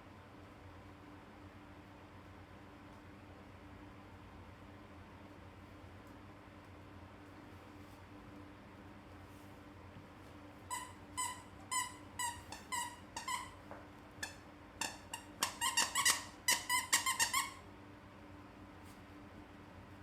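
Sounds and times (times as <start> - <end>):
squeaky toy squeaks: 10.7 - 13.6, 14.2 - 17.6.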